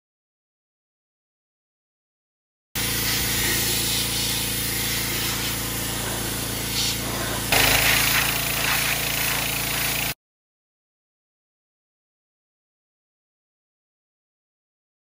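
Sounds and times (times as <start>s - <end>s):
pressure washer engine droning: 2.8s - 10.2s
water jet hissing: 2.8s - 10.2s.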